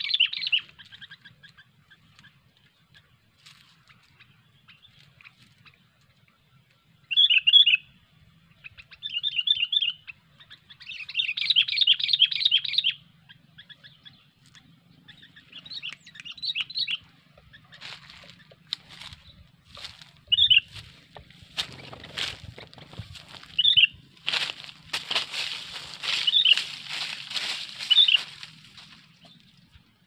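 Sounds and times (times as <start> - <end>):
bird chattering call: 0.0 - 2.0, 8.6 - 19.2, 19.8 - 28.6.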